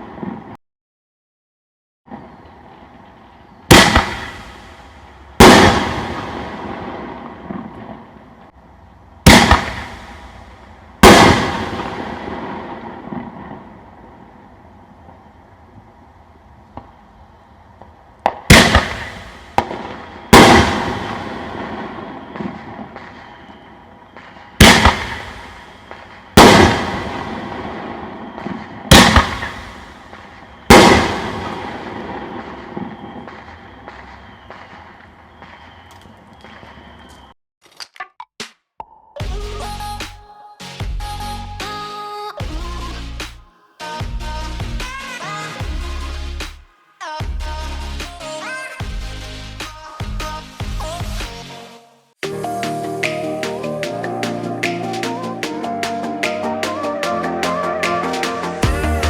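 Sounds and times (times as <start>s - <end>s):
firework booms with echo: 3.7s - 8.1s, 9.3s - 13.9s, 18.2s - 35.7s.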